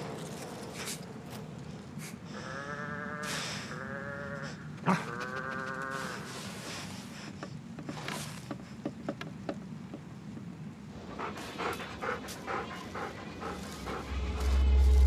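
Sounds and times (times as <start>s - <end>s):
dog panting: 10.9s - 15.0s.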